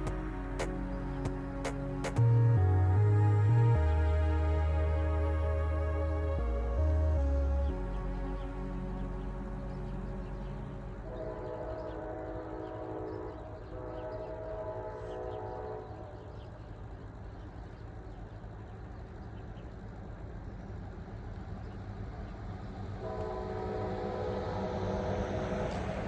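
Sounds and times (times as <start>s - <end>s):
locomotive horn blasts: 0.0s - 16.2s, 23.0s - 25.8s
rumble of passing train: 0.0s - 26.0s.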